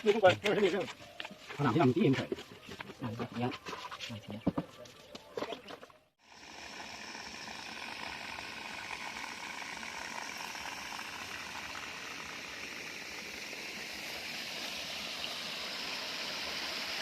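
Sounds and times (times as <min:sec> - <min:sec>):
waterfall pouring into pool: 0:10.6 - 0:17.0.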